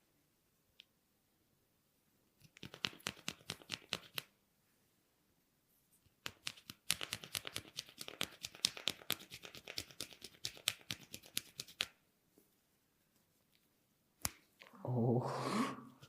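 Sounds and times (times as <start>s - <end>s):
crisp clicks and crackles of massage: 2.4s - 4.4s, 6.0s - 12.0s, 13.1s - 14.8s.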